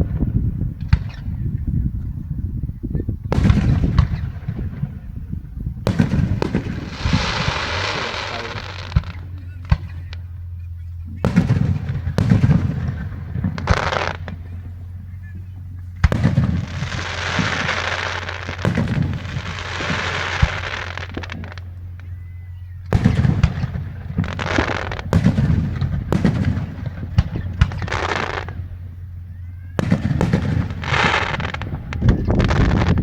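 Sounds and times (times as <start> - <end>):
firework bangs: 0.0 - 2.0, 2.8 - 33.0
firework pops and crackles: 0.8 - 1.3, 3.3 - 4.7, 5.9 - 10.3, 11.2 - 15.0, 15.9 - 22.1, 22.9 - 28.7, 29.8 - 33.0
firework fizzing hiss: 5.9 - 9.4, 16.0 - 21.6.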